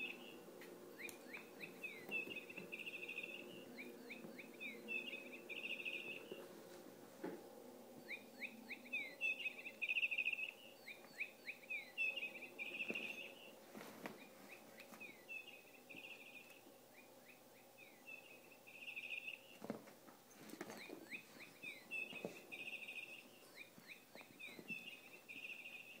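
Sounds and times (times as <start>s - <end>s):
toy bird chirping: 1.0s - 6.3s.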